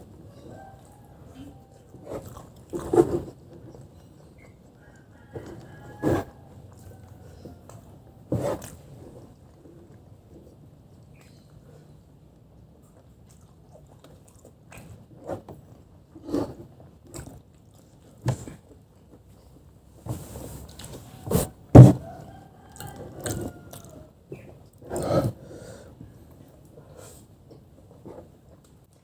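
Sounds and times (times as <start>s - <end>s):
chewing noodles: 0.0s - 15.3s, 22.0s - 25.4s.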